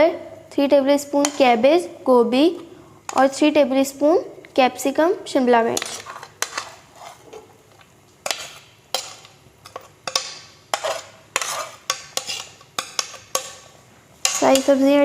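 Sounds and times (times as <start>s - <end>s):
spoon scraping pot: 5.7s - 15.0s
spoon clinking against pot: 8.3s - 14.7s.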